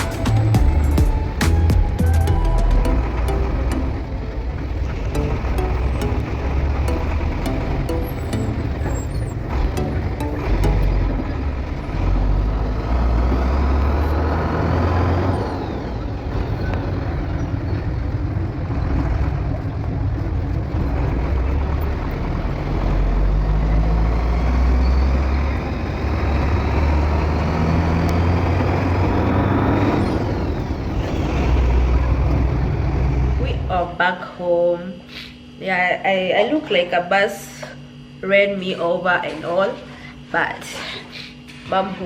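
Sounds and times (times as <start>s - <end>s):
vehicle engine and road rumble: 0.0s - 34.1s.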